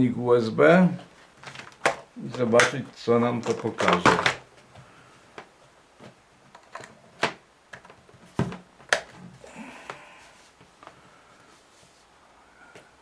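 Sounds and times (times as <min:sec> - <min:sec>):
plastic clicks and knocks: 0:01.4 - 0:02.8, 0:03.4 - 0:04.5, 0:05.3 - 0:09.2.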